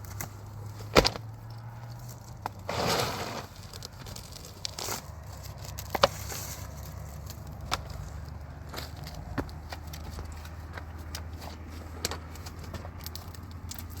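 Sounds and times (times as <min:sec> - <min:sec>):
handling clicks and knocks: 0:00.0 - 0:02.7, 0:03.6 - 0:14.0
scraping crinkling noise: 0:00.0 - 0:14.0.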